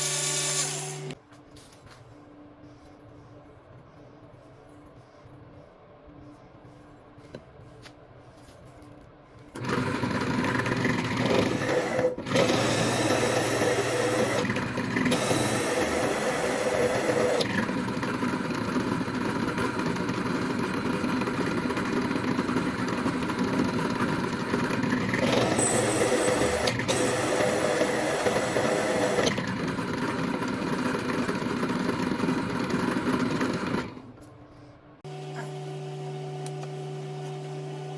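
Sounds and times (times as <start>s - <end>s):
motor running: 9.6s - 34.0s.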